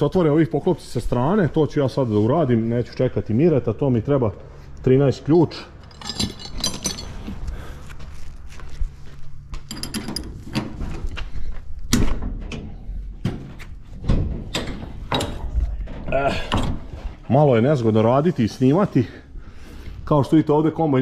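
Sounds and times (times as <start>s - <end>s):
wrench clanking on metal: 5.8s - 7.3s.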